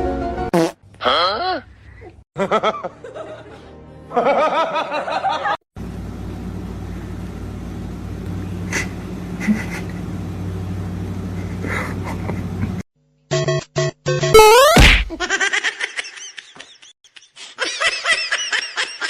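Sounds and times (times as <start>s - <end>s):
laughter-like voices: 2.0s - 5.6s, 8.7s - 10.1s, 11.4s - 12.8s, 15.1s - 19.0s
background music: 2.5s - 5.2s
steady low hum with hiss: 5.8s - 12.8s.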